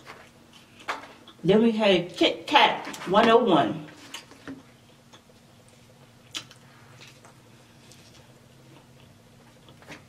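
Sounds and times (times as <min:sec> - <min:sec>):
soft chewing: 0:00.0 - 0:01.4, 0:04.0 - 0:10.0.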